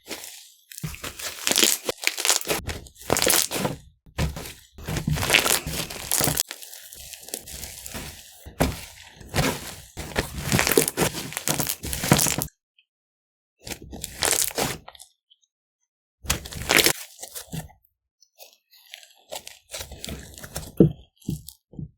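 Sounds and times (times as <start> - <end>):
slime crackling and popping: 0.8 - 3.7, 5.1 - 8.0, 10.6 - 12.5, 14.1 - 14.7, 16.4 - 17.0.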